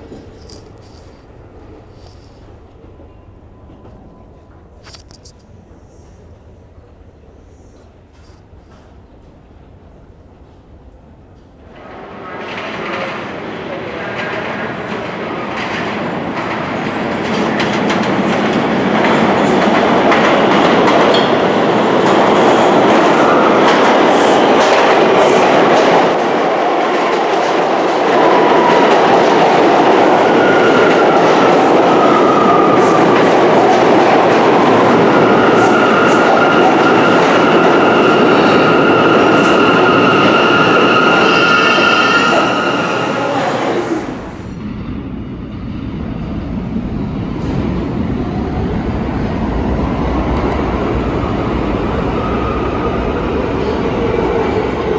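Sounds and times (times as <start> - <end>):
subway train rumbling past: 0.0 - 54.9
high wheel squeal: 35.1 - 44.3.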